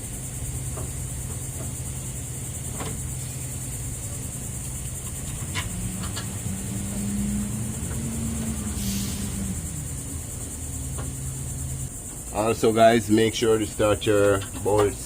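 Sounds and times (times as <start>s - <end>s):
low engine hum: 0.0s - 12.3s
higher hum: 0.0s - 12.4s
high insect-like drone: 0.0s - 15.0s.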